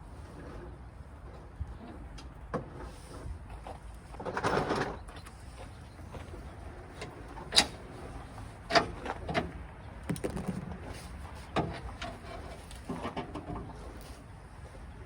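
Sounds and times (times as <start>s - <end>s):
metal knocks and clanks: 10.1s - 12.2s.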